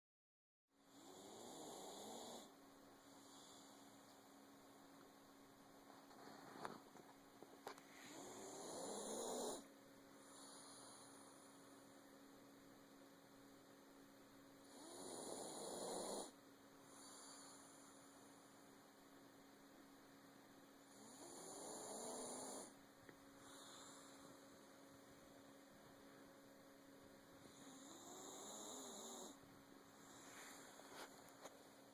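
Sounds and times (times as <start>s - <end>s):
low electrical hum: 0.7s - 31.9s
faint slow snoring: 0.9s - 4.1s, 8.0s - 11.6s, 14.6s - 18.4s, 20.9s - 22.8s, 23.4s - 24.5s, 27.4s - 31.2s.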